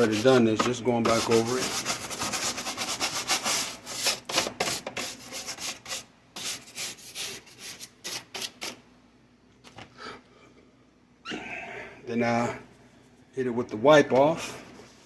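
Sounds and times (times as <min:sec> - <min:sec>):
stiff brush scrubbing: 0:00.0 - 0:08.8.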